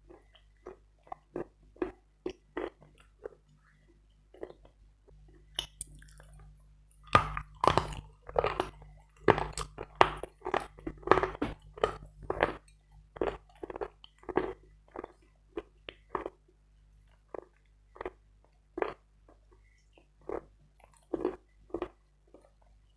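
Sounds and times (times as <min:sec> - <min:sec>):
chalk being chewed crunching: 0:05.6 - 0:06.4, 0:07.0 - 0:16.4.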